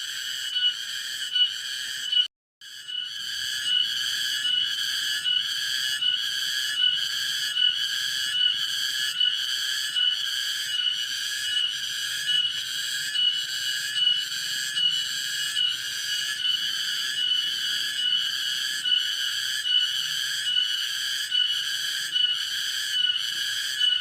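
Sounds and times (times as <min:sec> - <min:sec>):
shrill trilling frogs or insects: 0:00.0 - 0:24.0.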